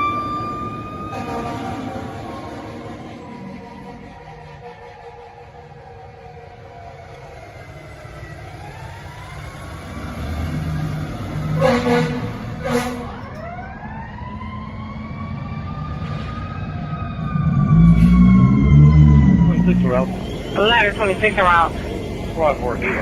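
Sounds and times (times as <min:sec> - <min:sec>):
fire truck sirens wailing: 0:00.0 - 0:23.0
truck engine rumble: 0:00.0 - 0:23.0
truck horn blasts: 0:01.1 - 0:02.9, 0:11.5 - 0:13.3.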